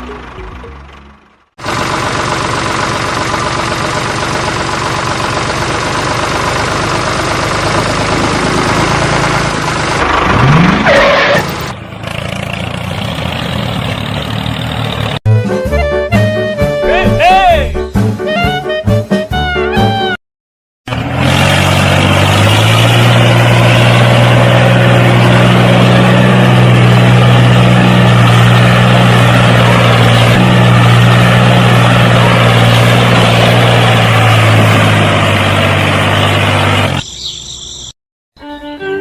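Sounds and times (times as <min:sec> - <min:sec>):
engine running steadily: 0:00.0 - 0:15.9.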